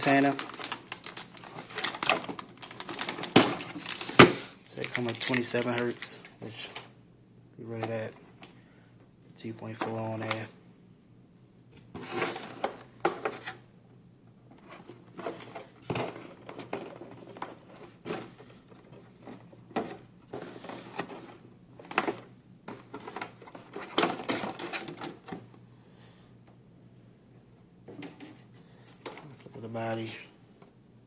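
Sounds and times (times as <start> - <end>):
packaging rustling: 0.0 - 6.9.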